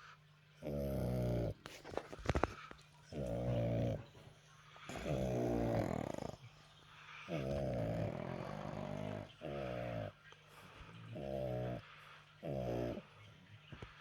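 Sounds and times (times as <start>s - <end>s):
dog snoring: 0.6s - 2.5s, 3.1s - 4.2s, 4.9s - 6.6s, 7.3s - 10.3s, 10.9s - 13.2s.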